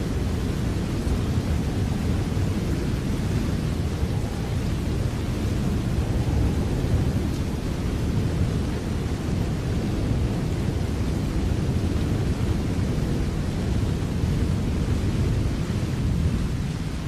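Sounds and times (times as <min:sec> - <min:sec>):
heavy rain hiss: 0:00.0 - 0:17.0.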